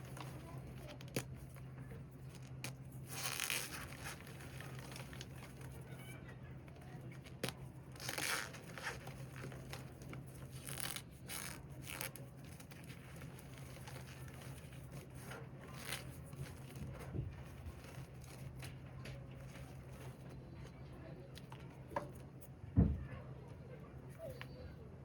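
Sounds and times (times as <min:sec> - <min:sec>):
faint low hum: 0:00.0 - 0:25.0.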